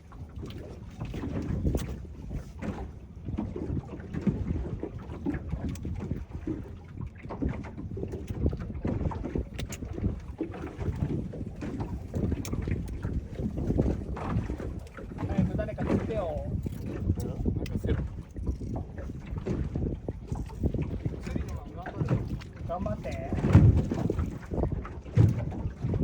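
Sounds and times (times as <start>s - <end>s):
wind buffeting microphone: 0.0s - 26.0s.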